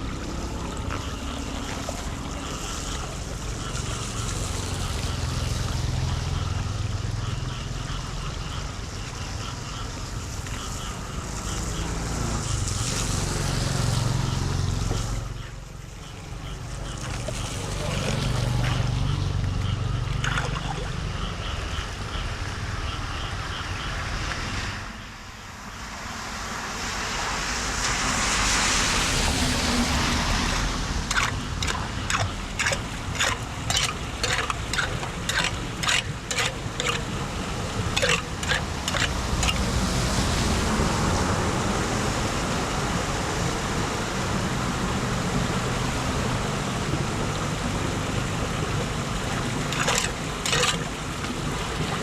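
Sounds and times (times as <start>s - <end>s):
floodwater rushing and splashing: 0.0s - 23.4s, 24.0s - 52.0s
sharp strokes: 31.1s - 37.2s, 37.9s - 39.7s.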